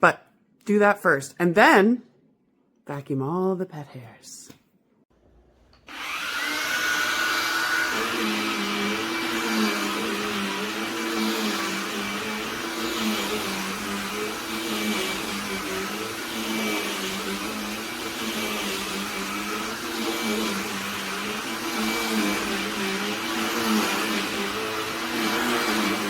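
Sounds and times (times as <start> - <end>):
handheld vacuum running: 5.8 - 26.0.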